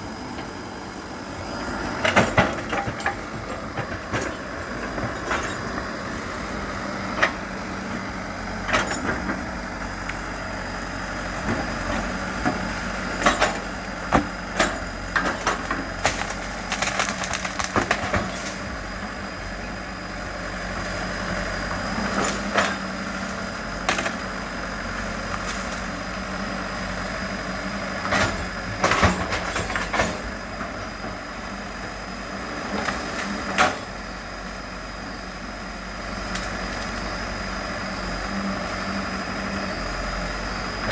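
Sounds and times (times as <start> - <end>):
diesel engine running: 0.0 - 40.9
sharp knocks and cracks: 13.2 - 18.6.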